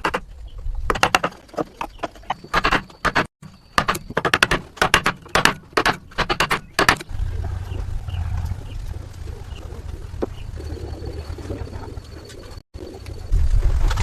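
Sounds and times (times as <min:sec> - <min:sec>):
hand tools striking wood: 0:00.9 - 0:07.0.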